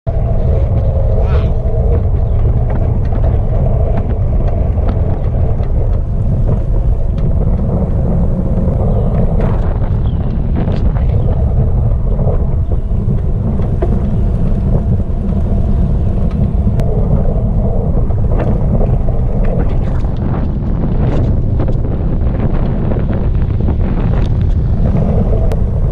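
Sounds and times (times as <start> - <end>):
wind buffeting microphone: 0.0 - 25.9.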